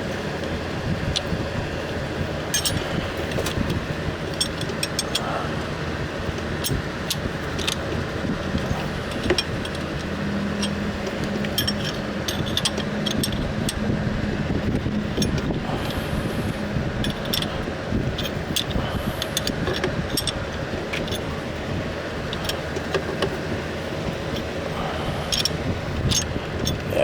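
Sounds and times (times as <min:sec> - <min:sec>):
low steady hum: 0:00.0 - 0:27.0
steady background noise: 0:00.0 - 0:27.0
metal hand tools clinking: 0:02.5 - 0:03.6, 0:04.3 - 0:05.6, 0:06.4 - 0:13.8, 0:17.0 - 0:17.6, 0:18.2 - 0:21.3, 0:24.3 - 0:27.0.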